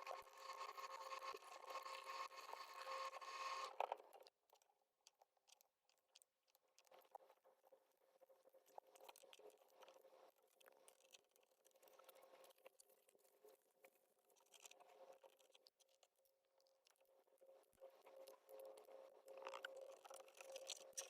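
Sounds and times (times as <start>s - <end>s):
faint steady hum: 0.0s - 4.3s.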